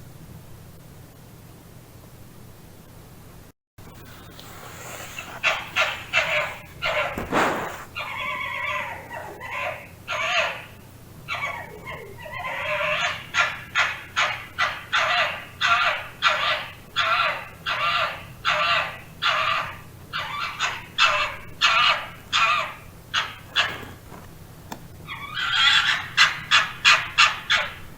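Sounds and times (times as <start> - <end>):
fox barking: 5.2 - 24.2, 25.1 - 27.9.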